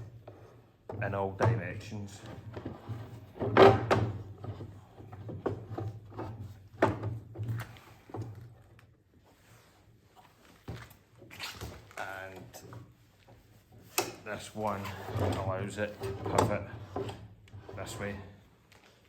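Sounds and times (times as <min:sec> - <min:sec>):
machine mount clunks and knocks: 0:02.5 - 0:07.5.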